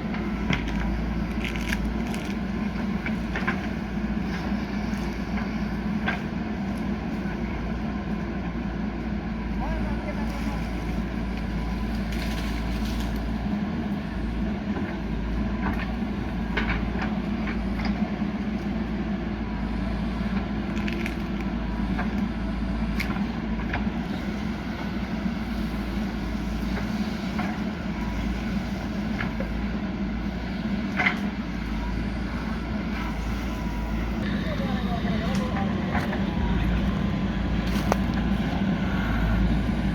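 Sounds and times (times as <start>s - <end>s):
rock and soil crunching: 0.0s - 7.1s, 20.2s - 22.3s, 25.5s - 39.9s
diesel engine running: 0.0s - 39.9s.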